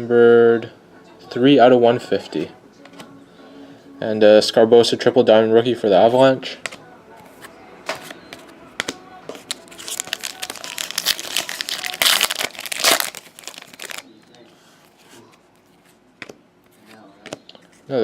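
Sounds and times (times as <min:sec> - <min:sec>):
faint handling sounds: 0:06.0 - 0:18.0
foil wrapper crinkling: 0:09.4 - 0:14.3.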